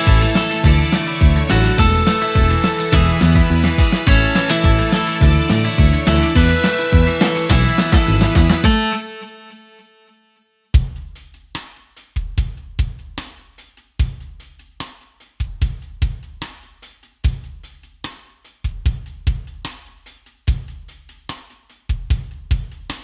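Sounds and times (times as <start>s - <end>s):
bass drum thumps: 0.0s - 8.8s, 10.8s - 11.3s
snare and hi-hat strikes: 0.0s - 8.8s, 10.8s - 23.0s.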